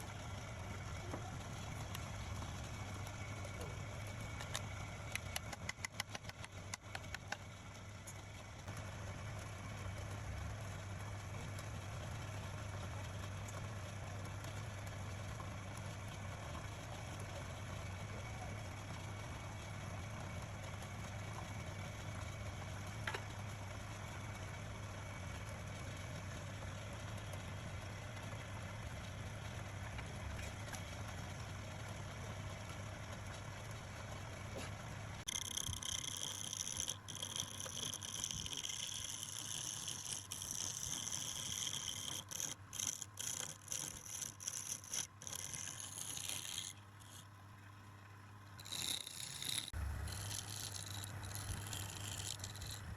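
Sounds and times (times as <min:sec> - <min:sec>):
turning tool scraping wood: 0:34.6 - 0:47.3, 0:48.6 - 0:52.9
lathe motor humming: 0:35.2 - 0:47.2, 0:48.6 - 0:52.9.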